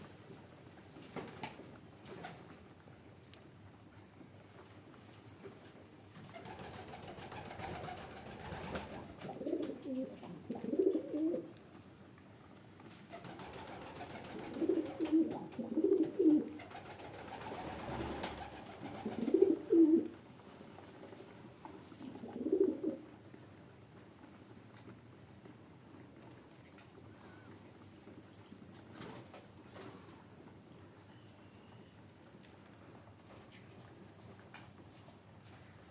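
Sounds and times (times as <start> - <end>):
pigeon cooing: 9.2 - 11.5, 14.2 - 16.8, 18.4 - 20.2, 22.0 - 23.1.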